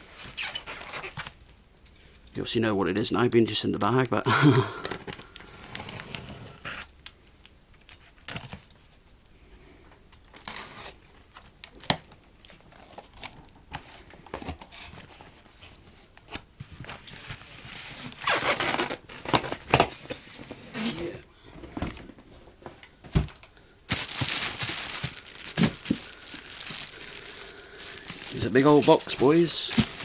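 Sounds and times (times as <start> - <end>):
packaging crinkling: 10.2 - 15.6, 16.3 - 19.9, 23.2 - 30.0
packaging tearing: 10.3 - 11.0, 18.0 - 19.8, 23.9 - 30.0.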